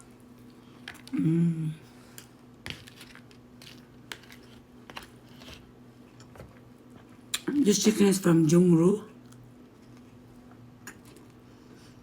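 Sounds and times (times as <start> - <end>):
person humming: 1.1 - 1.9.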